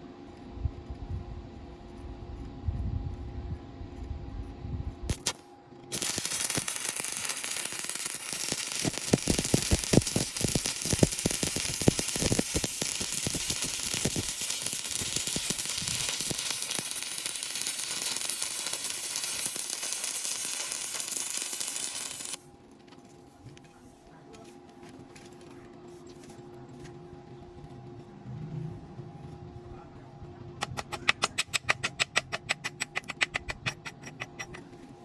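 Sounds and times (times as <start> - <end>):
welding arc crackling: 5.1 - 22.4.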